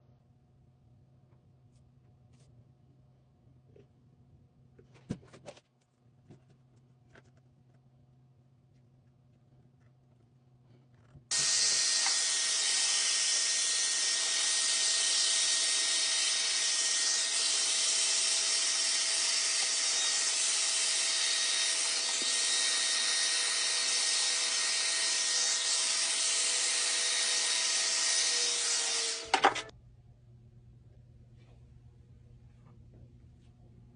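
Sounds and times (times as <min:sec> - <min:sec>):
power tool hissing: 0:11.3 - 0:29.7.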